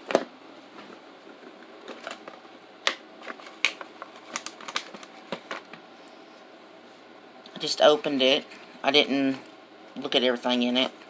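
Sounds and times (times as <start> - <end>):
packaging clicks and crinkles: 1.8 - 5.8.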